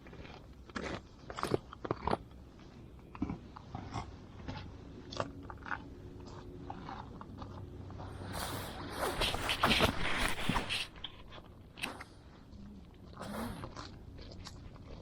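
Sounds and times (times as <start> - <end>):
crunches and scrapes: 6.7 - 12.3.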